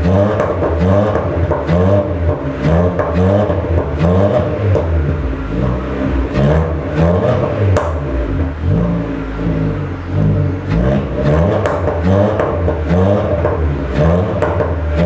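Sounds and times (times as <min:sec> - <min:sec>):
car engine revving: 0:00.0 - 0:15.0
exhaust pop: 0:00.0 - 0:15.0.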